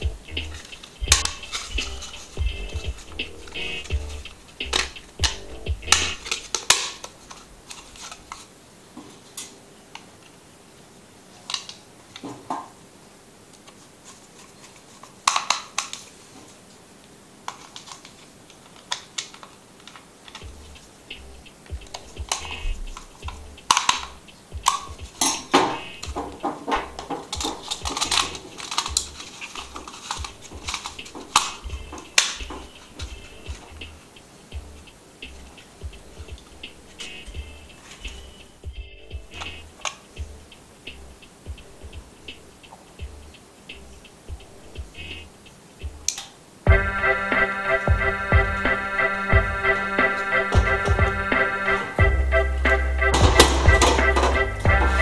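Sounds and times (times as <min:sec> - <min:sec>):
small hard objects clicking: 0:00.0 - 0:08.5, 0:17.5 - 0:34.2.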